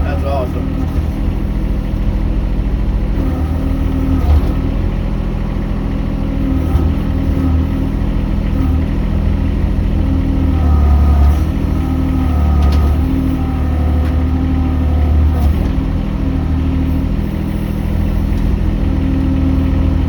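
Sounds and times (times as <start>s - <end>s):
mini excavator engine running: 0.0s - 20.0s.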